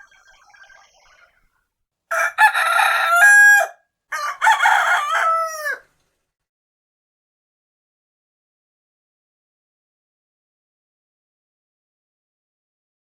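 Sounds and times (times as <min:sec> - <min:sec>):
rooster crowing: 0:02.1 - 0:05.9.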